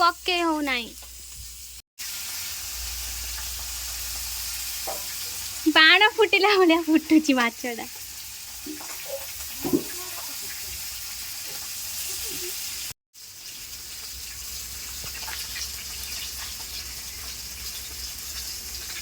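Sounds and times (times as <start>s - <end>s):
fish sizzling in hot oil: 0.0s - 19.0s.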